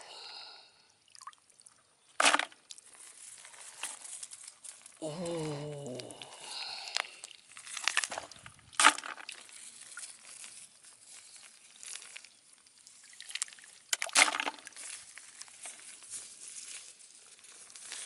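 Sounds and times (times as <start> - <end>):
light crackling rustle: 2.7 - 8.7, 9.3 - 13.8, 14.7 - 18.0
water sloshing and splashing: 7.2 - 10.5, 12.8 - 15.2.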